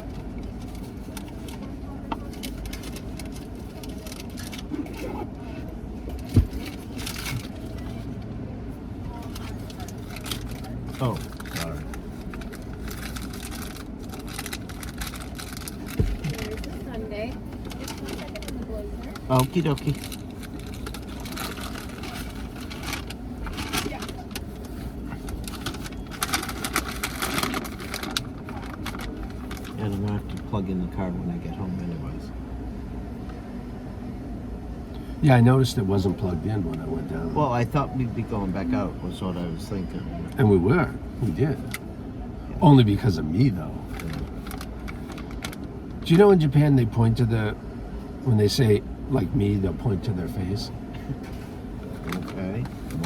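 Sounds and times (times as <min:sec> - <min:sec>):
faint clicks and rustles: 0:00.0 - 0:30.5, 0:43.8 - 0:46.1, 0:50.9 - 0:53.0
low rumble inside car cabin: 0:00.0 - 0:53.0.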